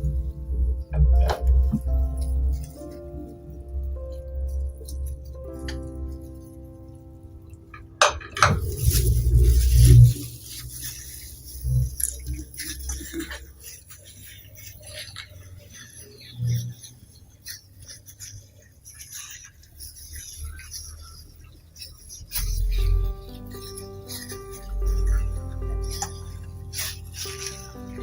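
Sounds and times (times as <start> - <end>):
utensils knocking on dishes: 8.0 - 8.8.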